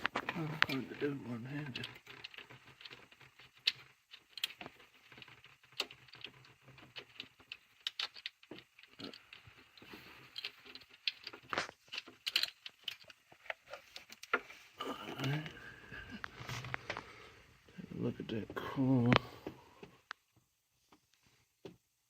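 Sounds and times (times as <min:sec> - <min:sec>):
tool clicks and rattles: 0:00.0 - 0:14.5.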